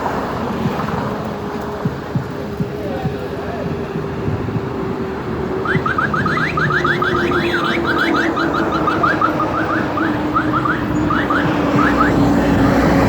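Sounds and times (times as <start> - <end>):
low engine hum: 0.0 - 13.0
traffic noise: 0.0 - 13.0
electronic alarm chirps: 5.6 - 12.3.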